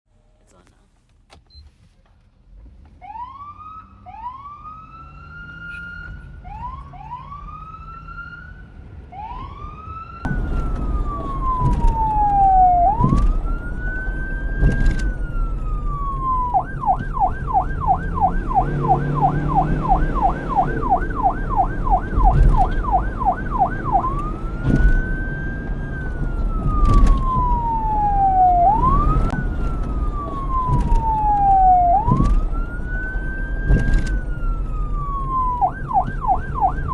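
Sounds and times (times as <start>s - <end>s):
police siren wailing and yelping: 3.0s - 36.9s
low rumble: 10.3s - 36.9s.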